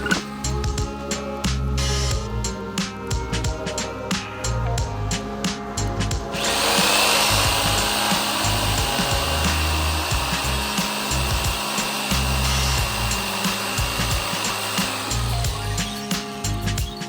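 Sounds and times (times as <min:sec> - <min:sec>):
background music with steady beat: 0:00.0 - 0:17.0
power tool cutting with high whine: 0:06.3 - 0:17.0.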